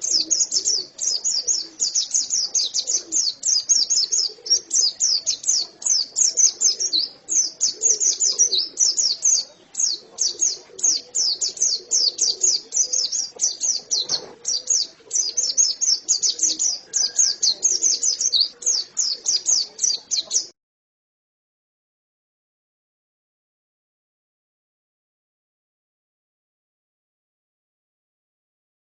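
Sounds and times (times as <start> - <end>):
bird singing rapid high chirps: 0.0 - 20.5.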